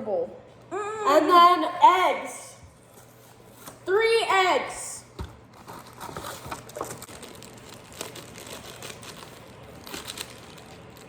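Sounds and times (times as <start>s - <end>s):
faint rustling of packaging: 5.5s - 11.0s.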